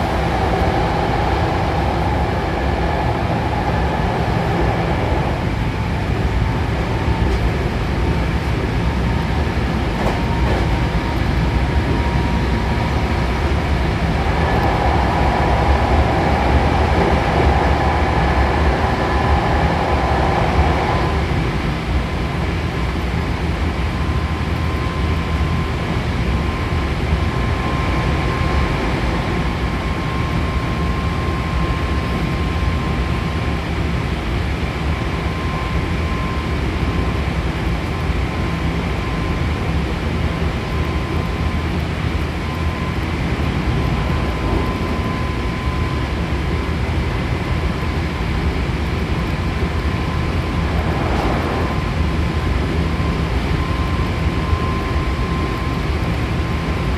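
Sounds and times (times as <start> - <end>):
train wheels rumbling on rails: 0.0 - 56.9
faint high whine: 34.8 - 39.4, 40.6 - 56.9.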